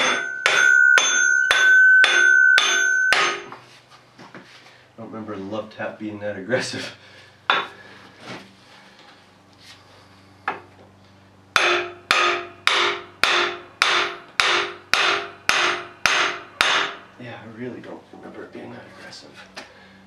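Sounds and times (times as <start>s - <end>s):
hammer striking metal: 0.0s - 3.6s, 7.5s - 7.8s, 11.6s - 17.0s.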